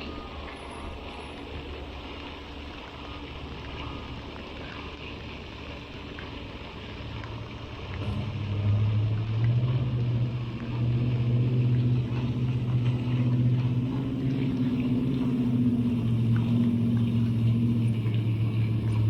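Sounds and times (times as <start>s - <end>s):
low engine hum: 0.0s - 19.0s.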